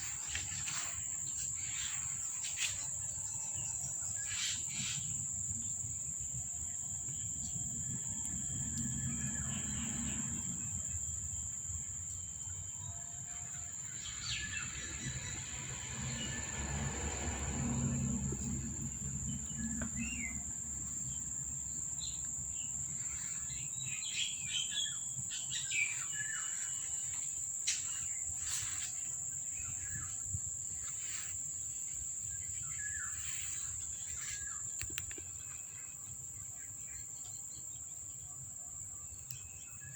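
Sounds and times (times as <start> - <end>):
crickets chirring: 0.0 - 39.9
bird chirps: 19.5 - 20.5.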